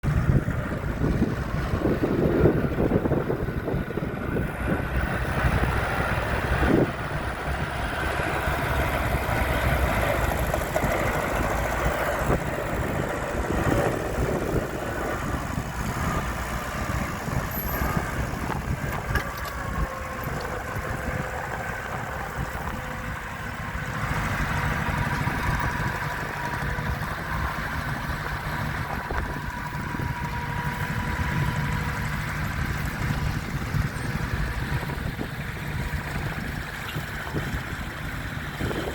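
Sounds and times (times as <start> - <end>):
tractor engine running: 0.0 - 38.9.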